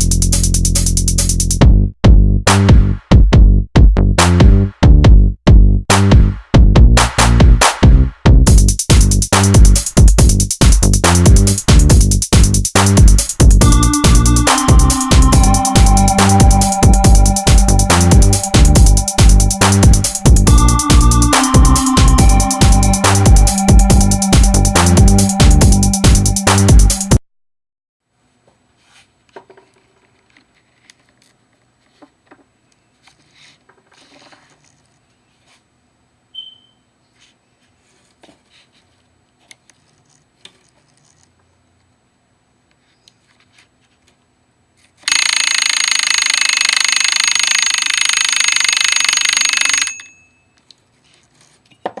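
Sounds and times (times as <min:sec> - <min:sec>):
alarm bell ringing: 0:13.6 - 0:27.2, 0:45.1 - 0:50.6.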